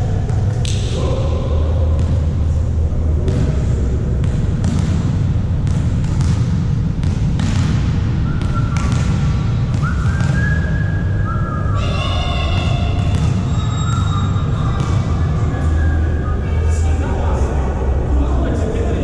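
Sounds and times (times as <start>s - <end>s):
volleyballs struck and landing: 3.2s - 11.2s, 12.4s - 15.7s
sneakers squeaking on court: 11.8s - 16.0s.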